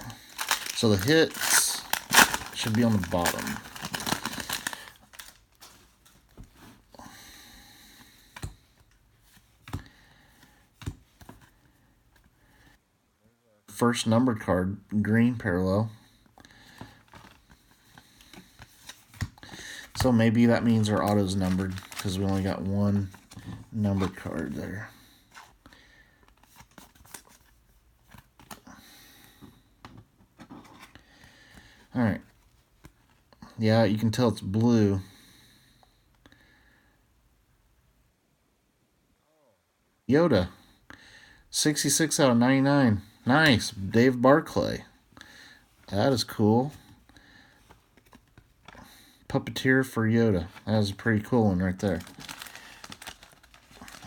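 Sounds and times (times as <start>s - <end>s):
trading cards rustling: 0.0s - 6.8s, 16.6s - 28.6s, 47.5s - 48.9s, 50.4s - 54.0s.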